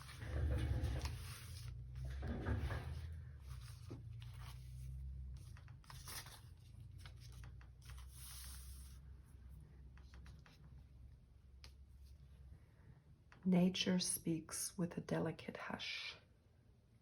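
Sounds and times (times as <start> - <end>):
paper rustling and scraping: 0.0 - 9.1.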